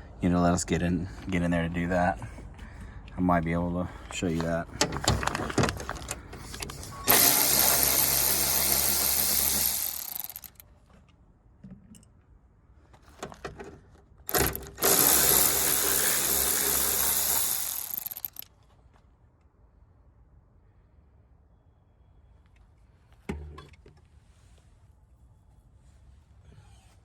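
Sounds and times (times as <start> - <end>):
small clicks: 5.9 - 10.6, 16.4 - 18.5
small electric motor humming: 7.0 - 10.6, 14.3 - 18.4.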